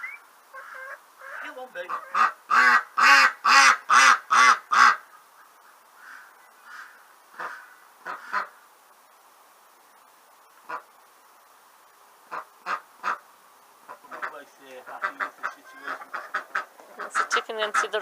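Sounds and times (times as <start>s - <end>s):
duck quacking: 0.5s - 8.6s, 10.6s - 10.9s, 12.3s - 18.0s.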